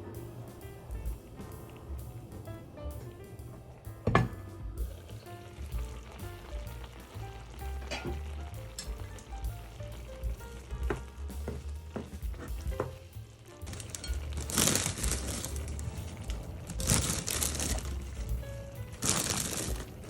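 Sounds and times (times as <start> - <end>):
food sizzling in a frying pan: 0.0 - 20.0
utensil clicking against pan: 6.2 - 14.4.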